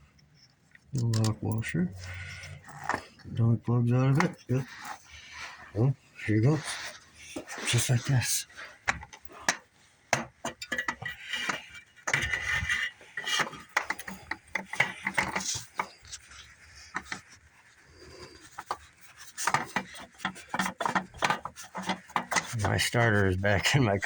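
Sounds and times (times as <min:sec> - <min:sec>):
metal parts and tools clinking: 0:00.8 - 0:03.2, 0:10.2 - 0:17.3.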